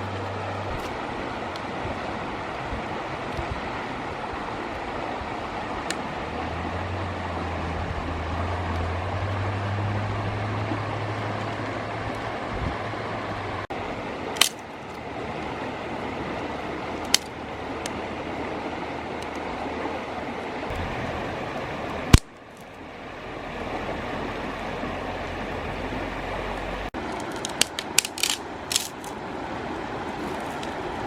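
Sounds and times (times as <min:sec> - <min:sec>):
river water rushing: 0:00.0 - 0:31.0
sharp clicks: 0:27.2 - 0:29.1.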